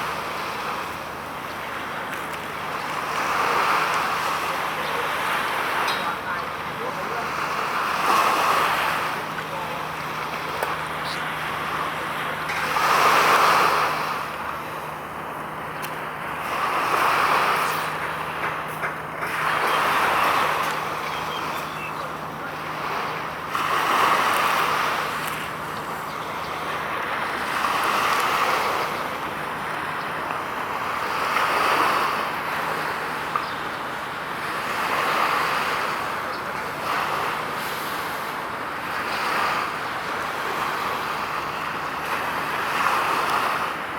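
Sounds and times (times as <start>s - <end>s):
steady low hum: 0.0s - 31.2s
small waves breaking: 0.0s - 43.9s.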